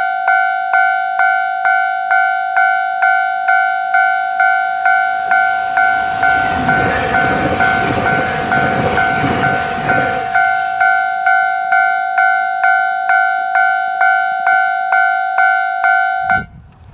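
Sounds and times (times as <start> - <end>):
level-crossing warning bell: 0.0 - 16.6
train passing: 3.0 - 13.7.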